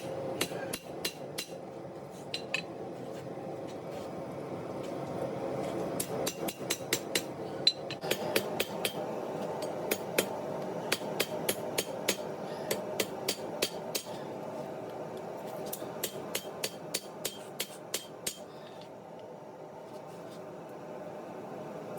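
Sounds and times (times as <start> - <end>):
steady background noise: 0.0 - 21.9
hammer striking steel: 0.4 - 1.6, 6.0 - 9.0, 10.9 - 14.2, 16.0 - 18.4.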